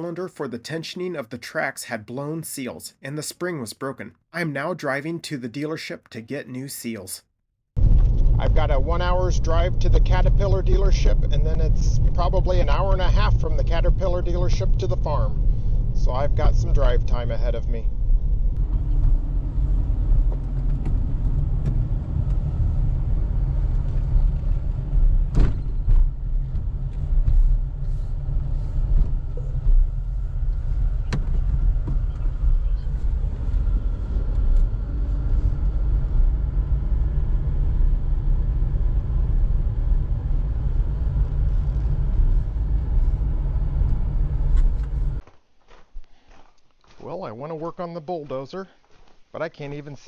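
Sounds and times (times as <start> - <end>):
vehicle engine and road noise: 7.8 - 45.2.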